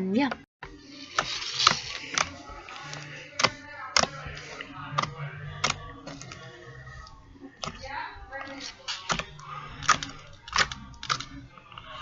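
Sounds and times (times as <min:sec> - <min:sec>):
background music: 0:00.0 - 0:12.0
slime clicks and crackles: 0:08.5 - 0:11.4.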